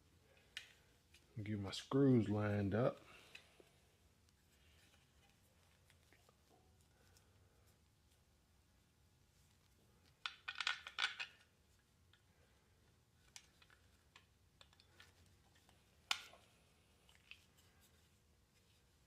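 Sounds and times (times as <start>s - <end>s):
small metal clinks and rattles: 10.0s - 12.2s.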